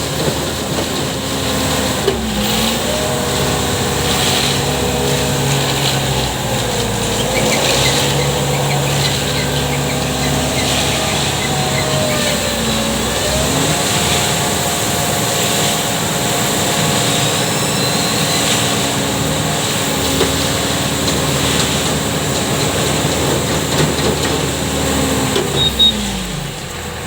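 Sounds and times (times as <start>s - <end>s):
heavy machine engine running: 0.0s - 27.0s.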